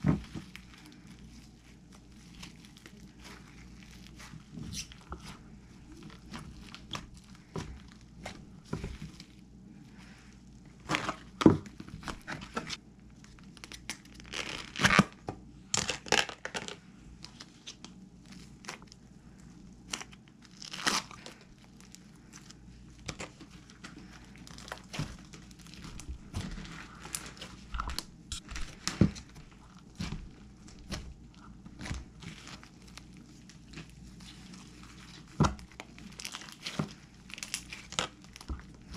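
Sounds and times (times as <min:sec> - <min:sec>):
slime popping and crackling: 0:10.8 - 0:19.0, 0:19.8 - 0:38.9.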